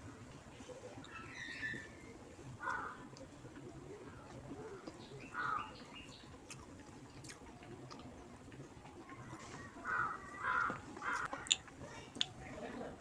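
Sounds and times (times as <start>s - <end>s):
person chewing food: 6.4s - 8.1s.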